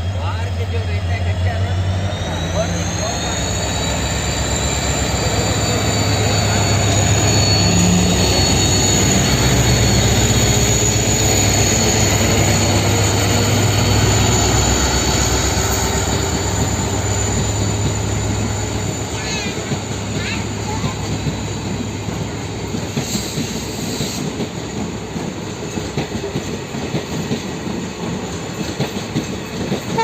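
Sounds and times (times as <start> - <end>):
diesel locomotive engine droning: 0.0 - 30.0
thin high whines: 2.1 - 24.3.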